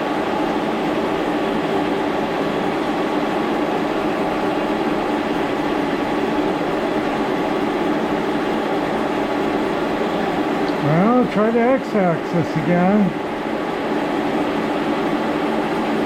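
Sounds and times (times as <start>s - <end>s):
machinery droning: 9.2s - 13.6s.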